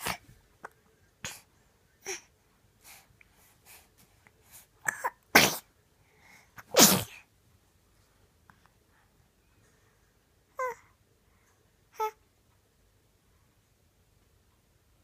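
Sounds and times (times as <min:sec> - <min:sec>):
baby sneezing: 0:00.0 - 0:00.2, 0:04.8 - 0:05.7, 0:06.6 - 0:07.2.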